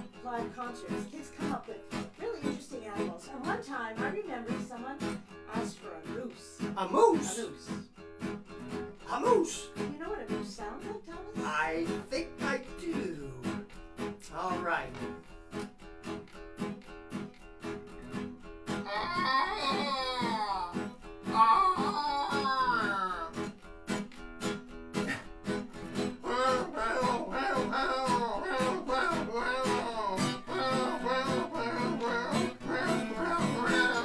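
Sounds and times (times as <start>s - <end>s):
acoustic guitar strumming: 0.0s - 34.0s
man imitating moose calls: 26.1s - 34.0s.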